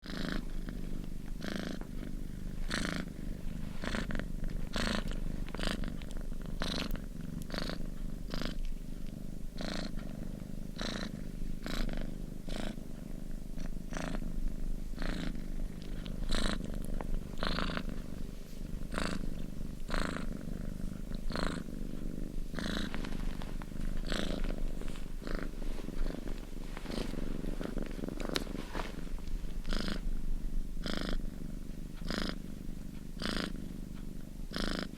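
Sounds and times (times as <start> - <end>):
cat purring: 0.0 - 34.9.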